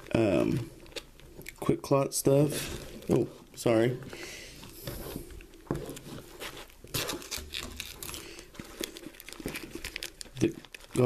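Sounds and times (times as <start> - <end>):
packets and fabric rustling: 2.3 - 11.0.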